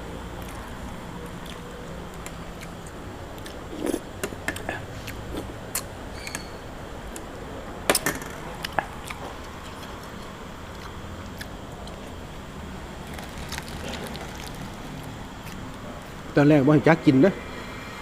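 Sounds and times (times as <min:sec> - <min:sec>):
eating clicks and cracks: 0:00.3 - 0:05.9, 0:08.6 - 0:12.2, 0:13.0 - 0:16.2.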